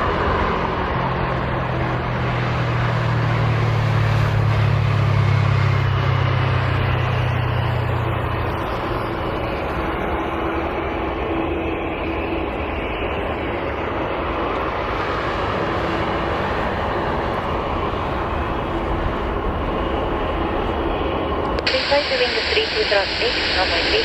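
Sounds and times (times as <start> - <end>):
jet engines running: 0.0 - 24.0
faint steady tones: 6.7 - 24.0.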